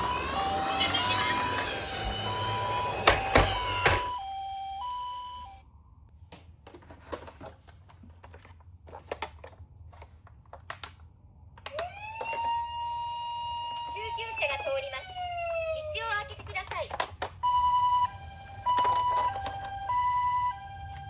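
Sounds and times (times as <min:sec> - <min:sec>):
toy electronic two-tone siren: 0:00.0 - 0:05.6, 0:11.7 - 0:16.2, 0:17.4 - 0:21.0.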